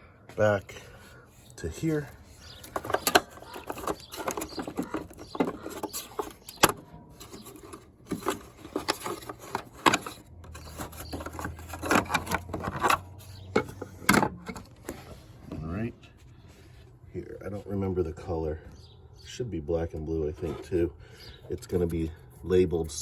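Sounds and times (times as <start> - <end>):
handling clicks and taps: 2.5 - 14.7.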